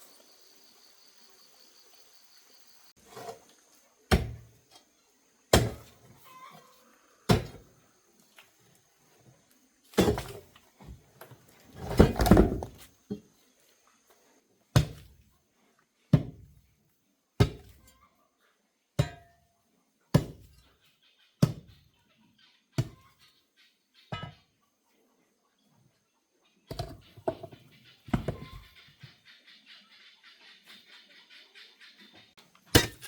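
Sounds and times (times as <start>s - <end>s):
digging tool thudding on ground: 4.1s - 4.5s, 5.5s - 5.9s, 7.3s - 7.6s, 32.7s - 33.0s.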